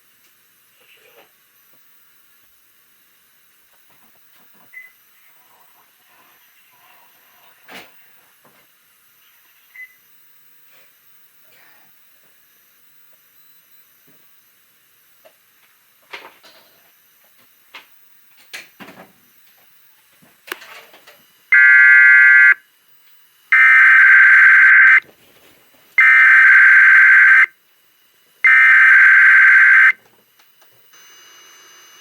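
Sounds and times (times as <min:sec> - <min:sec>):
buzzing digital data tones: 0:21.6 - 0:22.6, 0:23.5 - 0:25.0, 0:26.0 - 0:27.5, 0:28.5 - 0:30.0.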